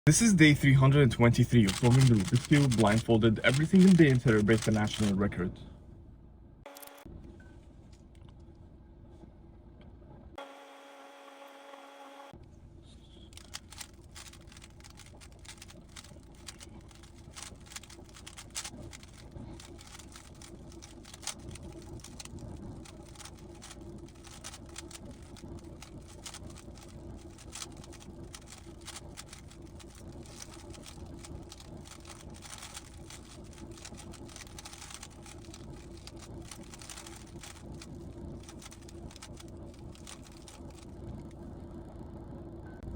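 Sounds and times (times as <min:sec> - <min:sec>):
low room hum: 0:00.1 - 0:10.4, 0:12.0 - 0:42.9
plastic puzzle cube clicking: 0:01.7 - 0:05.0, 0:13.4 - 0:40.8.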